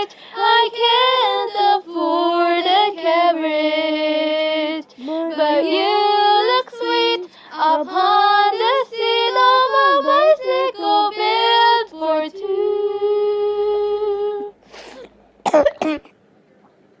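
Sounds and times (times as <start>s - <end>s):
person coughing: 14.8s - 16.2s.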